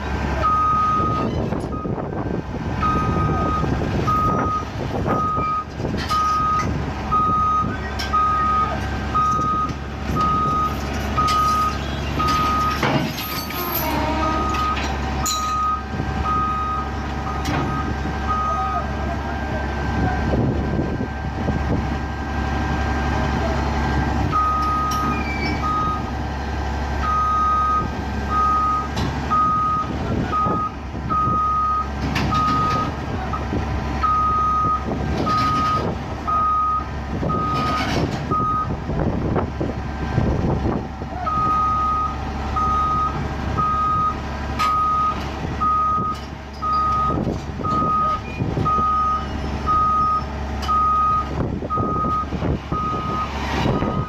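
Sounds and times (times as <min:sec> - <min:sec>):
diesel engine running: 0:00.0 - 0:54.0
machinery clanks: 0:09.2 - 0:15.8.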